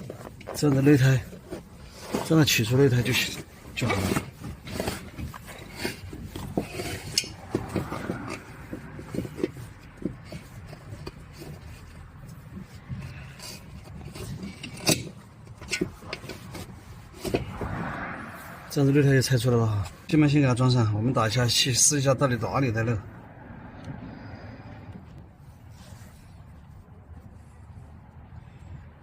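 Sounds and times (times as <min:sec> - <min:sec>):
rubber tube rubbing and scraping: 0:00.0 - 0:18.8.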